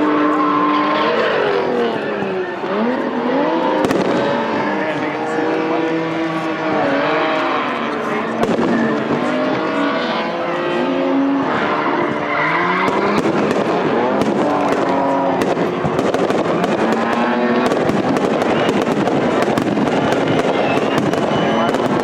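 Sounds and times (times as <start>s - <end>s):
sustained shifting tones: 0.0s - 22.0s
fireworks crackling pops: 3.8s - 4.3s, 8.4s - 8.8s, 12.8s - 22.0s.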